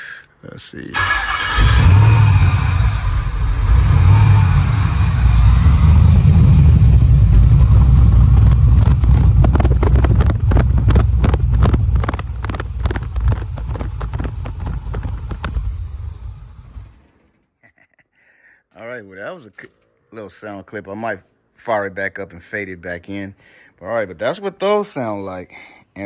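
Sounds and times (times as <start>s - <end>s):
car engine idling: 1.0s - 17.1s.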